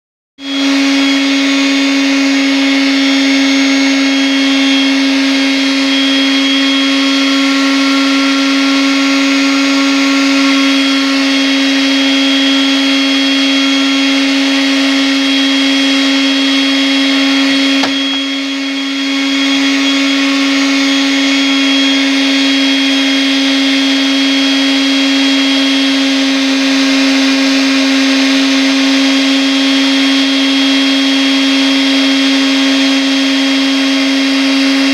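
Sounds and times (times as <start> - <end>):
power sander whining: 0.4 - 34.9.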